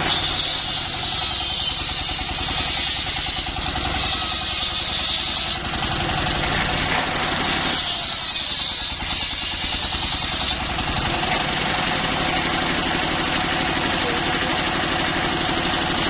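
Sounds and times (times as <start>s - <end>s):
circular saw running: 0.0s - 16.0s
saw blade whining through wood: 0.0s - 16.0s.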